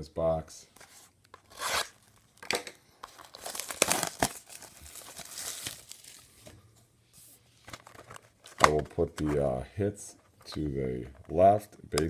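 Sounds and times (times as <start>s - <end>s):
plastic wrapping torn and crinkled: 1.7s - 6.3s.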